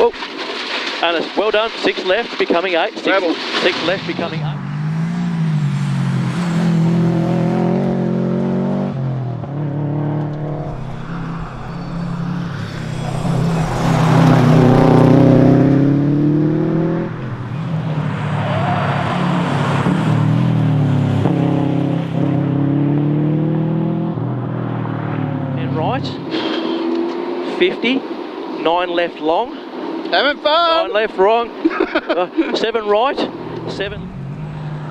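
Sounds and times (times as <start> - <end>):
car engine revving: 3.4 - 28.6, 32.8 - 34.9.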